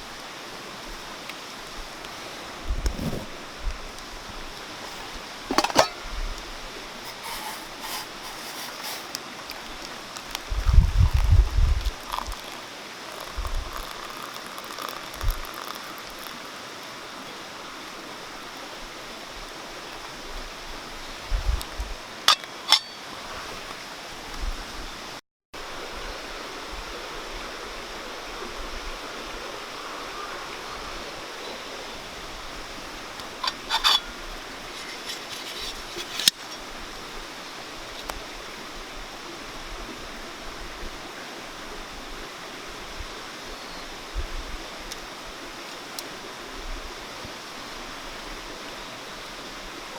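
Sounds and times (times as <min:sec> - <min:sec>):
mountain stream rushing: 0:00.0 - 0:21.4, 0:22.0 - 0:49.9
sharp clicks and clinks: 0:22.3 - 0:23.0.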